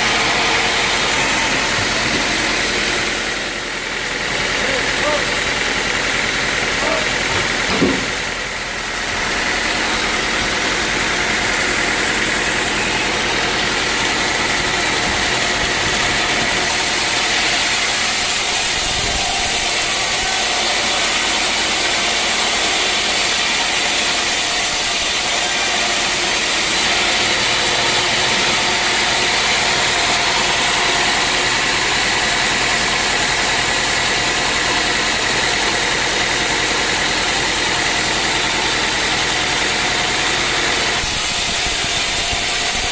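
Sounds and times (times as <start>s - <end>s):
sawmill machinery humming: 0.0s - 42.9s
loud hiss: 16.6s - 22.0s, 41.0s - 42.9s.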